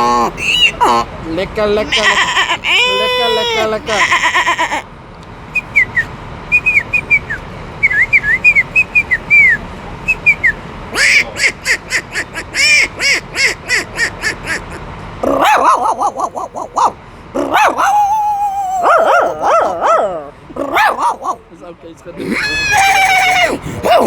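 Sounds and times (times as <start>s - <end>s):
man imitating animal calls: 0.0s - 1.2s, 1.8s - 4.8s, 14.6s - 21.5s, 22.2s - 24.0s.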